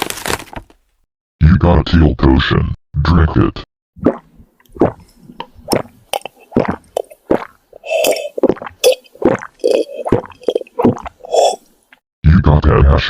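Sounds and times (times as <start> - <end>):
gulping and smacking mouth noises: 4.0 - 12.0
breathy burst: 11.2 - 11.7.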